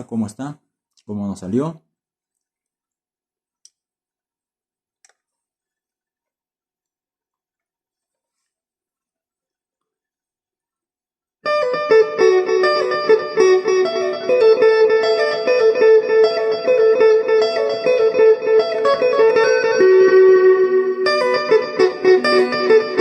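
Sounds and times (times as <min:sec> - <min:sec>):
electric guitar melody: 0:11.4 - 0:23.0.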